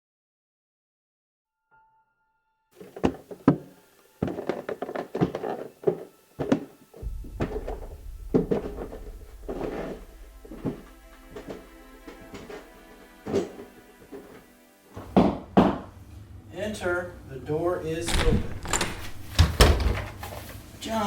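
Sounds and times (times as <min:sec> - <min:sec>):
sharp thuds and knocks: 0:02.8 - 0:14.4
rough scraping: 0:02.8 - 0:14.5
low musical drone: 0:06.2 - 0:15.0.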